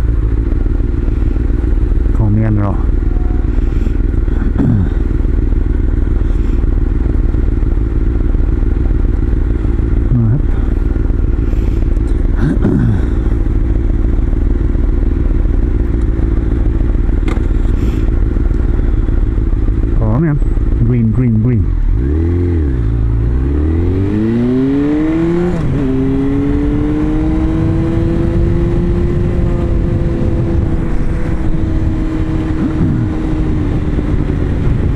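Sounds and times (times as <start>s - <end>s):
motorcycle engine running: 0.0s - 34.9s.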